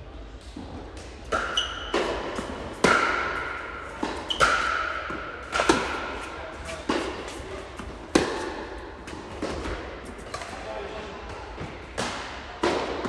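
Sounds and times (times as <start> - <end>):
tennis ball bouncing: 1.0 - 10.4
tennis racket striking ball: 1.2 - 10.5.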